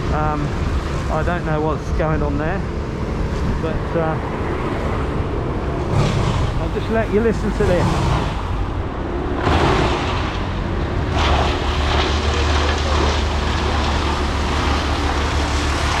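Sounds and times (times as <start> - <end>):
wood chipper engine running: 5.2 - 16.0.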